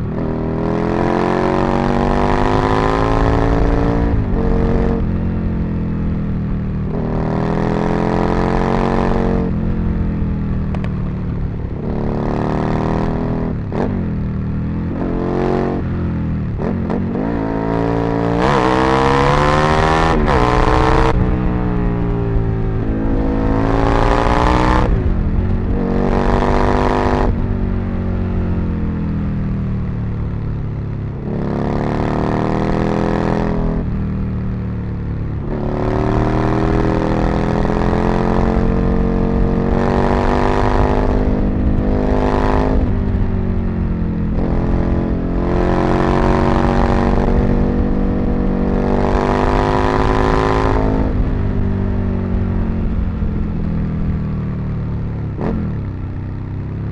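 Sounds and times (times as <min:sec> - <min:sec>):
motorcycle engine revving: 0:00.0 - 0:56.9.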